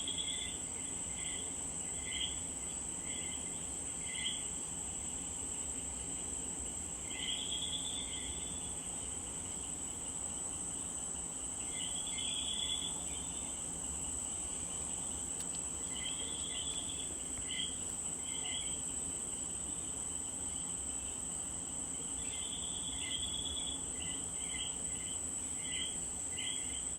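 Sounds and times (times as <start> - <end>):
frogs calling: 14.8 - 18.9.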